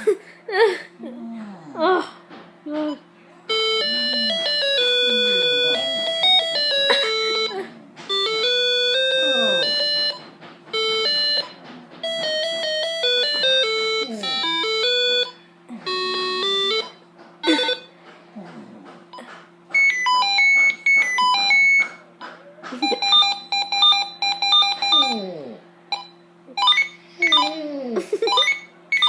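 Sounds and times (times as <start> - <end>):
mobile phone ringtone: 3.5 - 17.9, 19.8 - 22.0, 22.8 - 25.3, 25.9 - 27.6, 28.2 - 29.0.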